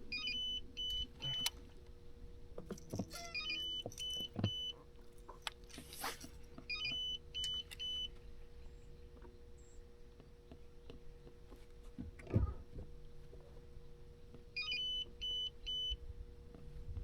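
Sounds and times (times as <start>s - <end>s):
faint steady hum: 0.0s - 17.0s
short high-pitched beeps: 3.1s - 4.8s.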